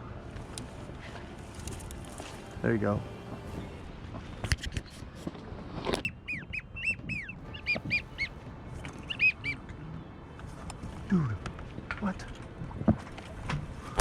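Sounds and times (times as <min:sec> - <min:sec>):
duck whistles: 0:06.0 - 0:08.3, 0:09.0 - 0:09.6.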